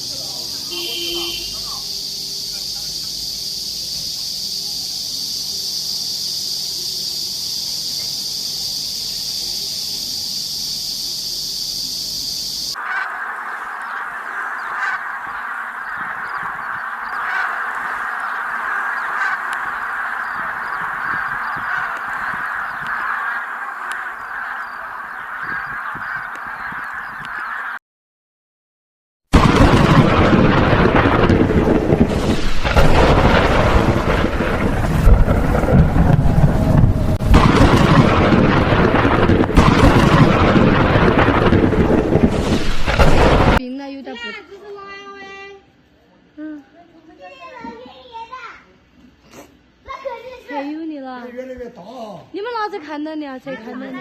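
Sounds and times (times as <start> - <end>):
flock of birds calling: 0.1 - 3.3, 12.7 - 27.8.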